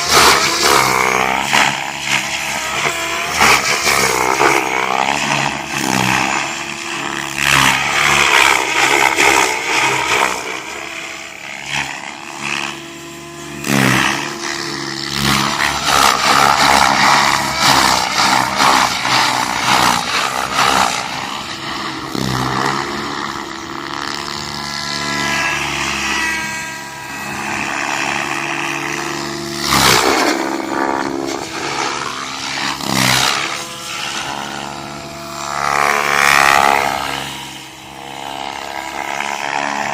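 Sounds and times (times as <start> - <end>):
rc helicopter rotor whine: 0.0 - 39.9.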